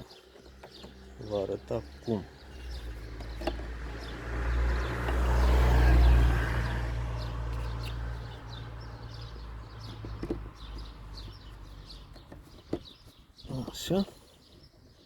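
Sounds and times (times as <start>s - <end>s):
small birds chirping: 0.0s - 15.0s
vehicle engine passing by: 1.0s - 12.0s.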